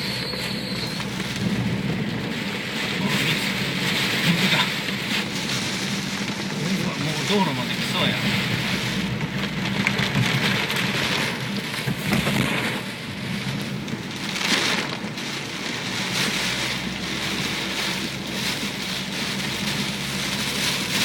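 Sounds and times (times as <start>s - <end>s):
river in flood rushing: 0.0s - 12.9s.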